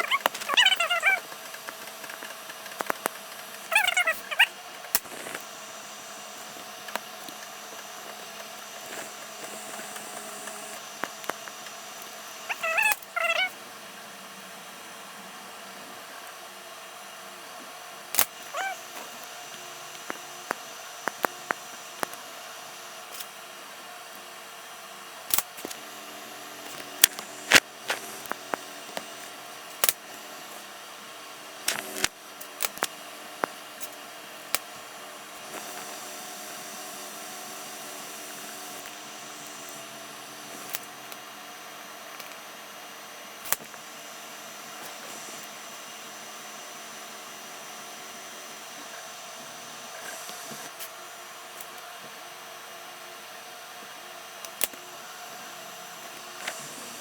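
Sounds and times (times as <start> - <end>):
wavering squeaky pitched sounds: 0.0 - 1.3, 3.6 - 4.6, 12.5 - 13.5, 18.5 - 18.8
room hum: 0.0 - 57.0.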